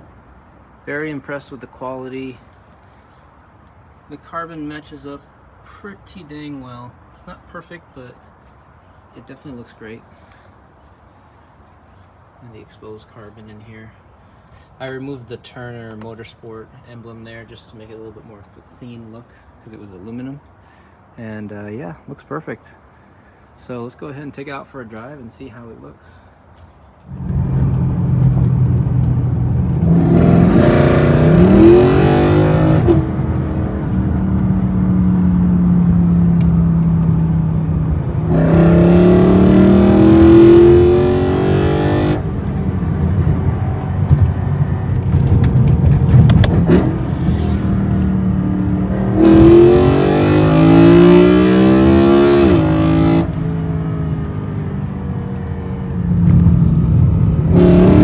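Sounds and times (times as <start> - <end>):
car engine accelerating hard: 27.1 - 58.0.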